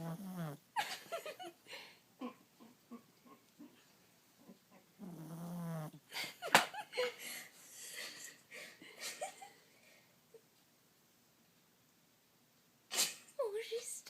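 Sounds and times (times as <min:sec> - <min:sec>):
dog snoring: 0:00.0 - 0:00.6, 0:05.0 - 0:06.0
dog snorting: 0:05.0 - 0:06.0.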